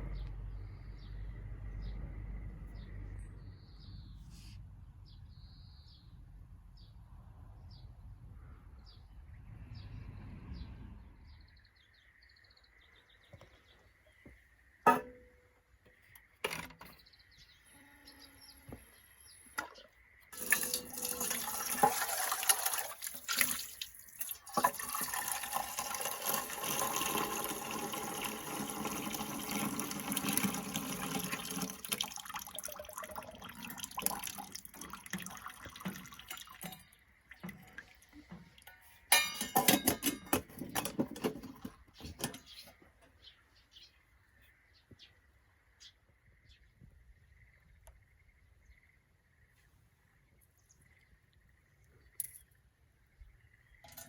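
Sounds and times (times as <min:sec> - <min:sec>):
quick clattering of cookware: 0:14.9 - 0:15.3, 0:38.6 - 0:42.6
water pouring into container: 0:20.3 - 0:38.1.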